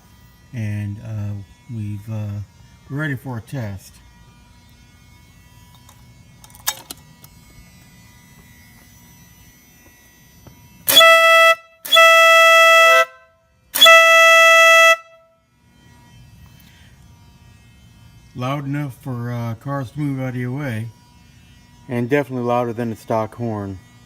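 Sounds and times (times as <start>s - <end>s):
air horn blasts: 10.8s - 15.4s.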